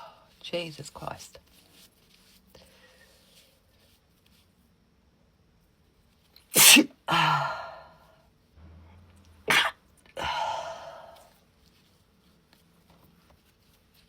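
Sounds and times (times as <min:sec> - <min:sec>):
woman sneezing: 0:06.6 - 0:07.6, 0:09.5 - 0:10.9.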